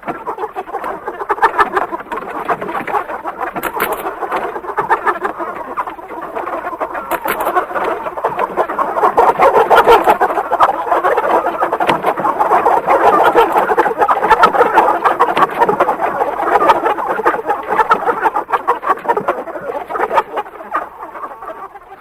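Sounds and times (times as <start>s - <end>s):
chickens clucking: 0.0s - 22.0s.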